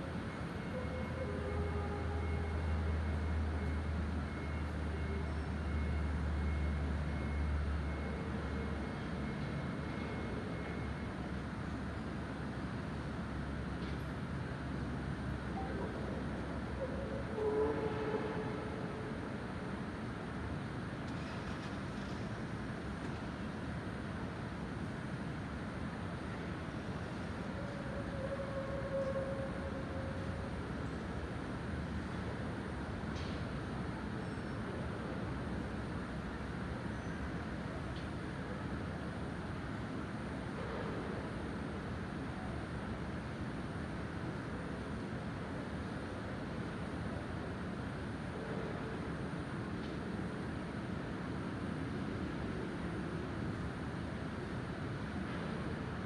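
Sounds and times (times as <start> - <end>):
outdoor background noise: 0.0 - 56.0
steady horn-like tone: 16.9 - 19.1, 27.6 - 30.4.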